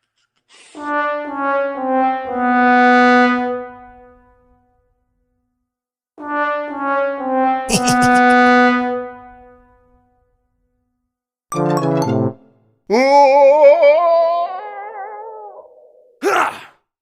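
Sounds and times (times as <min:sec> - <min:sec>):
sad trombone notes: 0:06.2 - 0:09.2.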